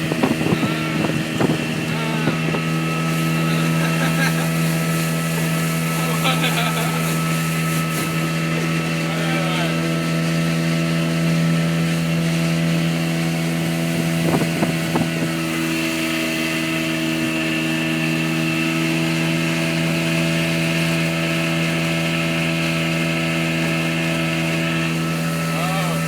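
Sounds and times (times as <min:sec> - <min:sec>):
wind on microphone: 0:00.0 - 0:03.8, 0:13.5 - 0:17.4
outboard motor running: 0:00.0 - 0:26.0.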